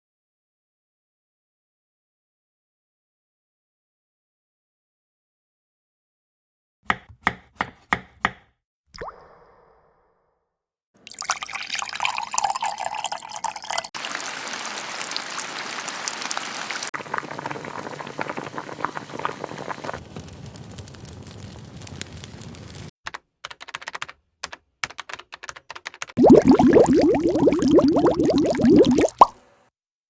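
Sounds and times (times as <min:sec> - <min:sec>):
water pouring and splashing: 0:11.0 - 0:22.9, 0:26.2 - 0:29.4.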